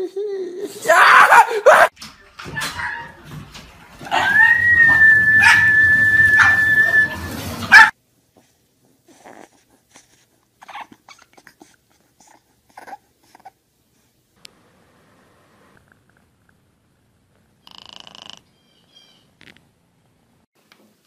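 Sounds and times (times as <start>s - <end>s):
dog yelping: 0.9s - 3.3s, 4.0s - 7.9s, 10.6s - 11.5s
dog whining: 4.1s - 7.9s, 9.1s - 13.5s.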